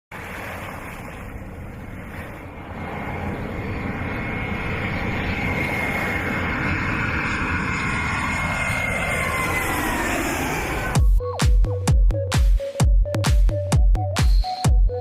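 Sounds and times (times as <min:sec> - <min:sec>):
low noisy rumble: 0:00.2 - 0:11.0.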